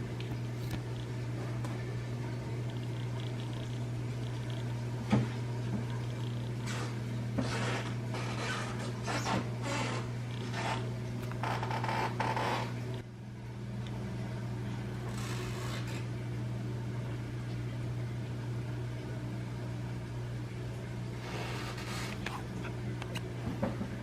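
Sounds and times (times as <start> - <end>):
ceiling fan motor hum: 0.0 - 24.0.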